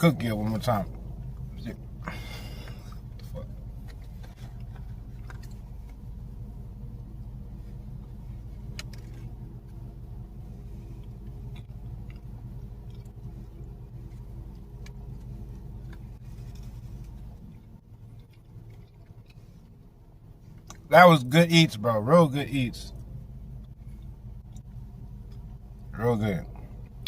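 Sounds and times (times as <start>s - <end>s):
car engine idling: 0.0s - 27.0s.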